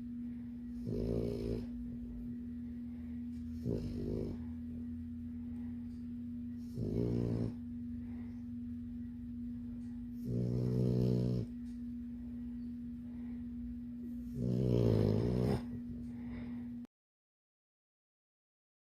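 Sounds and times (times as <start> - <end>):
steady low hum: 0.0 - 16.9
puppy snoring: 0.7 - 2.2, 2.9 - 4.7, 6.5 - 8.3, 9.8 - 11.8, 14.1 - 16.4.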